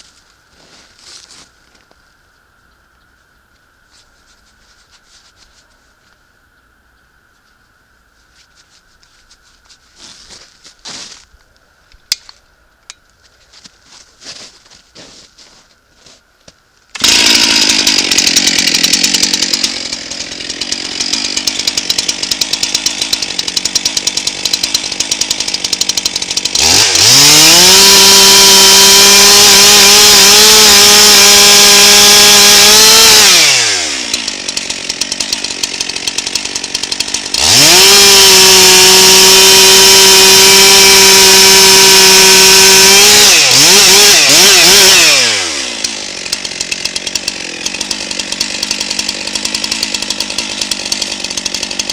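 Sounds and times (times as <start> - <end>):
chainsaw cutting wood: 16.9 - 51.9
chainsaw idling: 16.9 - 51.9.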